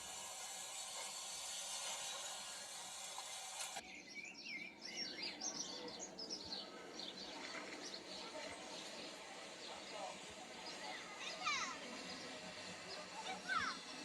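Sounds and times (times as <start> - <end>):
steady hiss: 0.0 - 3.8
birds chirping and singing: 3.8 - 9.0.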